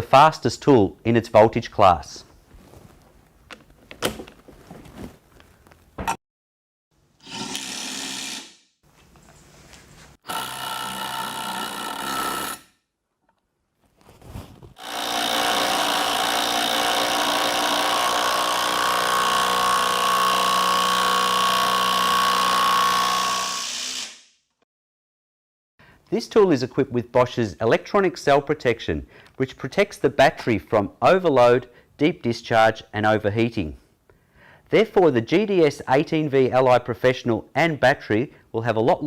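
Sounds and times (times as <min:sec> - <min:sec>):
impact wrench running: 0:07.2 - 0:08.6, 0:10.3 - 0:12.6, 0:14.8 - 0:24.2.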